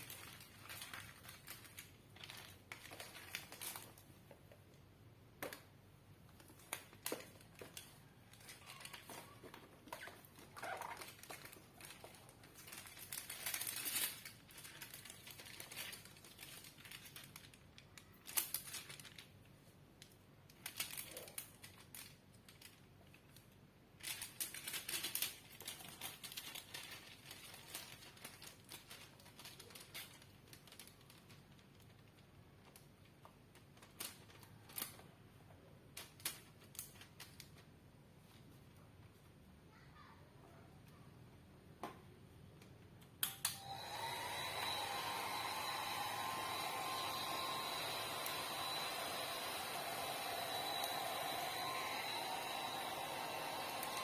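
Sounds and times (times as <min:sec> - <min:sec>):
plastic crinkling and rustling: 0:00.0 - 0:39.4.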